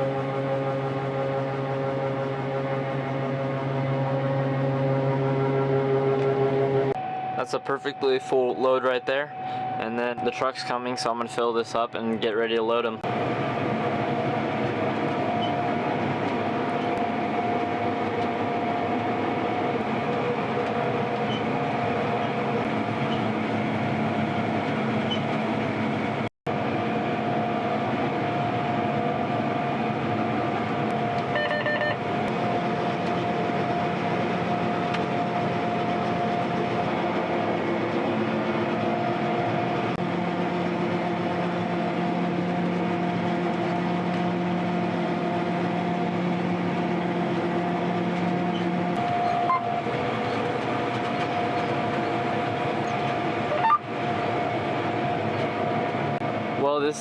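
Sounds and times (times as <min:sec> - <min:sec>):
combine harvester droning: 0:00.0 - 0:57.0
short electronic beep: 0:31.3 - 0:32.0, 0:53.5 - 0:53.8.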